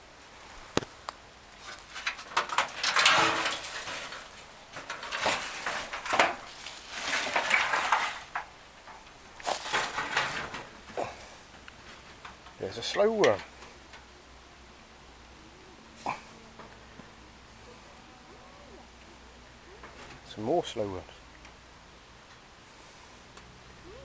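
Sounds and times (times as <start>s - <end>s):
tin sheet clattering and scraping: 1.6s - 13.6s.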